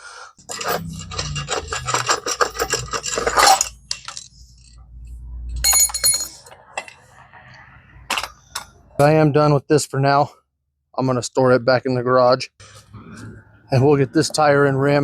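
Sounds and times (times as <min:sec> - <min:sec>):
metal tools clinking and scraping: 0:00.4 - 0:04.8, 0:05.6 - 0:07.1, 0:08.1 - 0:09.1
ringing metallic clatter: 0:00.4 - 0:04.8, 0:05.6 - 0:06.9.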